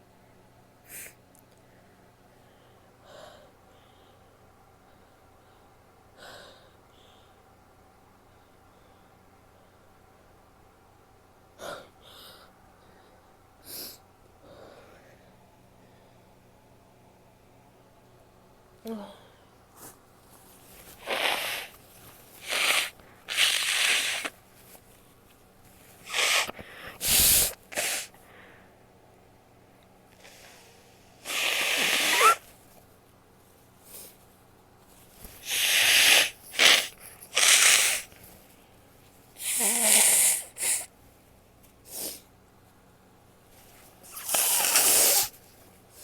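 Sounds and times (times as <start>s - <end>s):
sharp breaths: 22.4s - 24.3s
woman sneezing: 31.3s - 32.4s.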